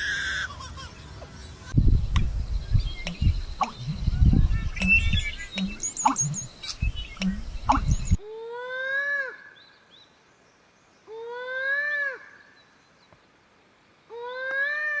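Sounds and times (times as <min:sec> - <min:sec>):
bird calling: 0:01.8 - 0:08.2.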